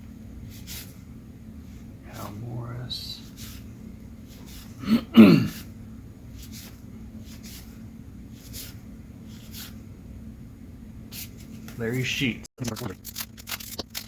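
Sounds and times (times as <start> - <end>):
steady low hum: 0.0 - 14.0
man clearing his throat: 4.8 - 5.6
trading cards rustling: 11.2 - 14.0.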